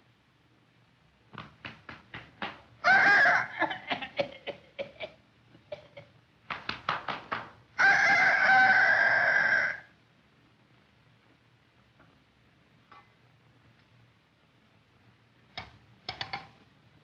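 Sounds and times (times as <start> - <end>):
hen clucking and cackling: 2.8 - 5.0, 7.8 - 9.9.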